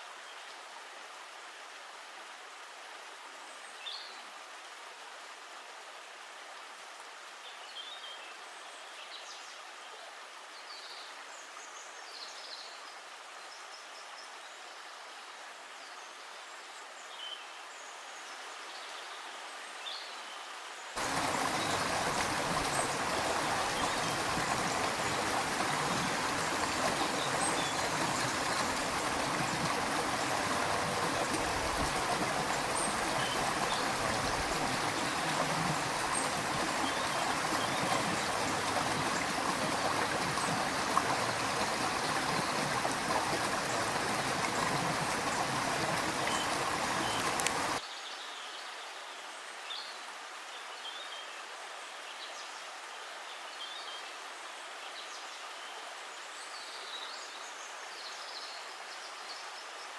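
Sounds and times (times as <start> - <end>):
running water rushing: 21.0 - 47.8
stream water flowing: 21.0 - 47.8.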